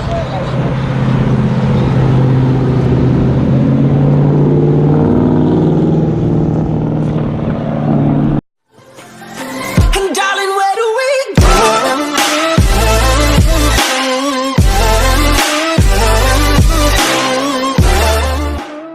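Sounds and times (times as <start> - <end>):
car engine running: 0.0 - 8.4.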